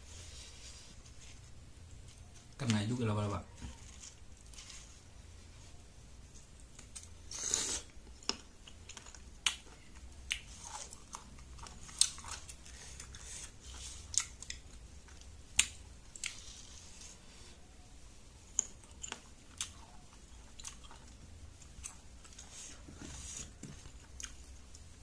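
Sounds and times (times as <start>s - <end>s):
rustling: 0.0s - 6.0s, 21.8s - 24.2s
fruit being bitten and chewed: 6.8s - 17.2s, 18.5s - 24.9s.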